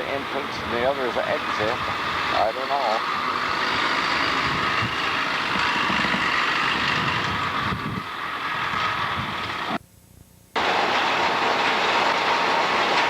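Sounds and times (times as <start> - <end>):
steady rushing noise: 0.0 - 9.9, 10.5 - 13.0
low rumbling: 0.0 - 13.0.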